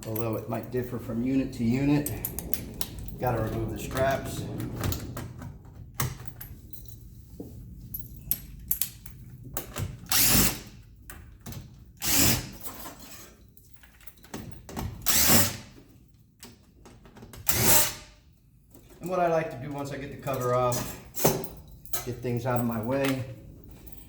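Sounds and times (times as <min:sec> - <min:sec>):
impact driver bursts: 0:12.0 - 0:12.6.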